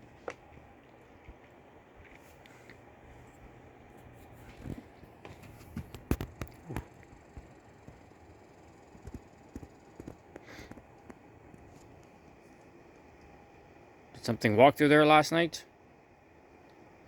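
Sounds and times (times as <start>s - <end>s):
footsteps: 0.0s - 8.0s
low steady background noise: 0.0s - 17.0s.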